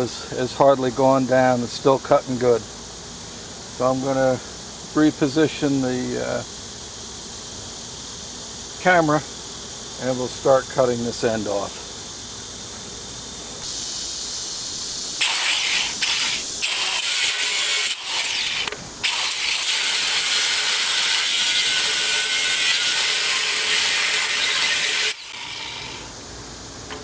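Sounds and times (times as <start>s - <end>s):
grinder cutting steel: 15.2s - 26.1s.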